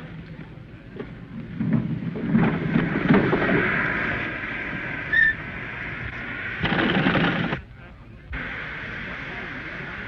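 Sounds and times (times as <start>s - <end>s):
steady hiss: 0.6s - 10.0s
thunder-like rumbling with crackles: 0.9s - 7.6s
short high whistle: 5.1s - 5.4s.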